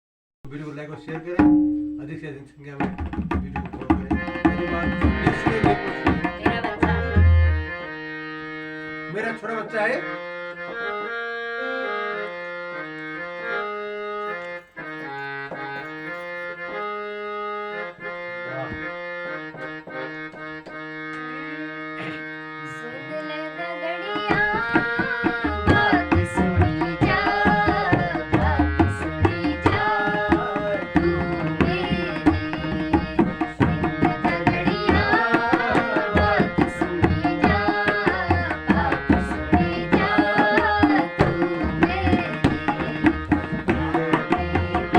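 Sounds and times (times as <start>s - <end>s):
hand drums fast rhythm: 1.2s - 2.0s, 2.8s - 7.6s, 24.2s - 44.9s
reed-toned keyboard melody: 3.2s - 44.9s.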